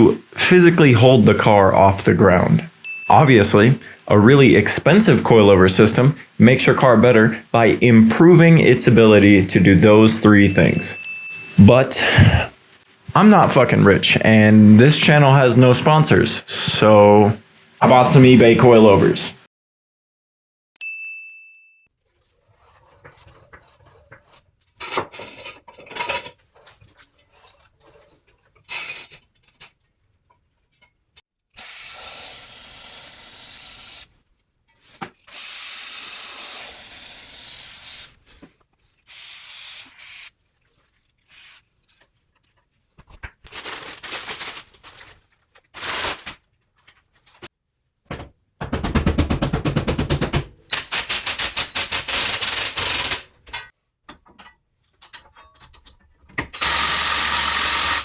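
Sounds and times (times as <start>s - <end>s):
long steady hisses: 0.0s - 19.5s, 56.6s - 58.0s
tools clinking and scraping: 53.4s - 56.1s.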